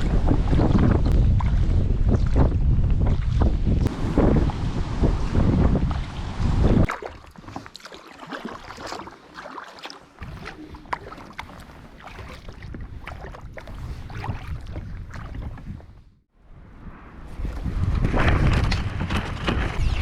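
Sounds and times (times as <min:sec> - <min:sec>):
wind buffeting microphone: 0:00.0 - 0:06.9, 0:10.2 - 0:20.0
water splashing and dripping: 0:00.0 - 0:15.9.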